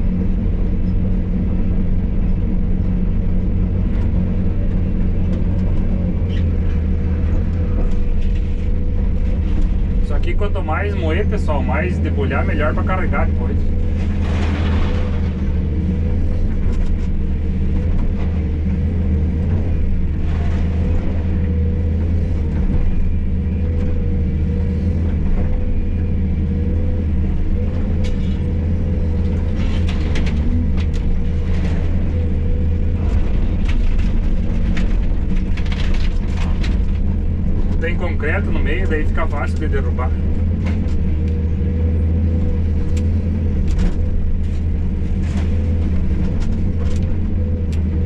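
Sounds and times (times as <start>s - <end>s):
diesel engine with wavering whine: 0.0s - 48.0s.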